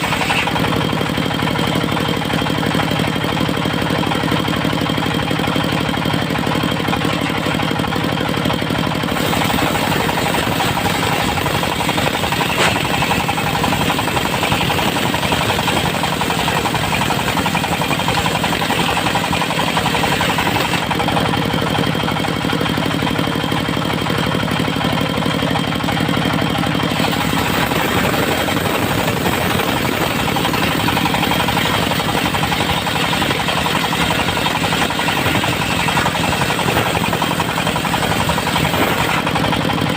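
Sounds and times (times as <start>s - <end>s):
saw blade cutting wood: 0.0s - 1.1s, 6.8s - 7.8s, 9.0s - 21.4s, 26.9s - 39.7s
diesel engine knocking: 0.0s - 39.9s.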